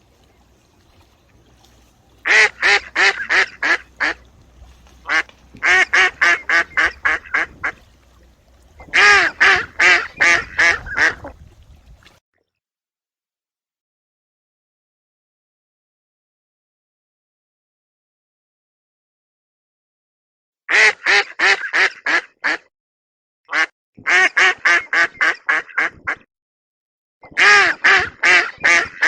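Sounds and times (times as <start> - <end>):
duck quacking: 2.2 - 4.3, 5.0 - 7.9, 8.8 - 11.4, 20.7 - 22.7, 23.5 - 26.2, 27.3 - 29.0.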